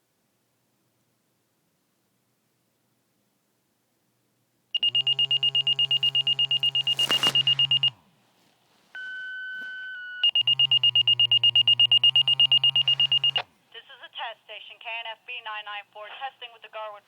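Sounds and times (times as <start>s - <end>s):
sequential page tones: 5.6s - 7.9s.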